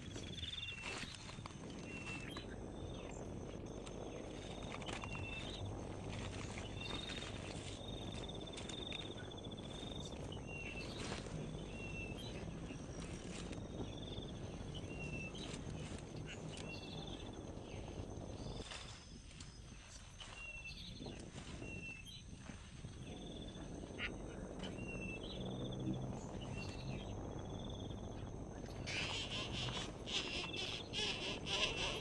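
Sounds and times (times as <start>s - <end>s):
animal chirps and trills: 28.6s - 32.0s.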